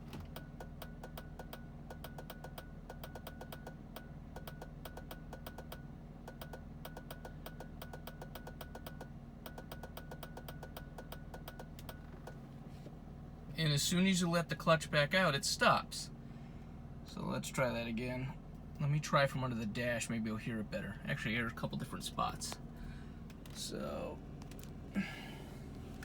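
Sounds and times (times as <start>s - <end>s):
rapid relay clicking: 0.2s - 12.4s.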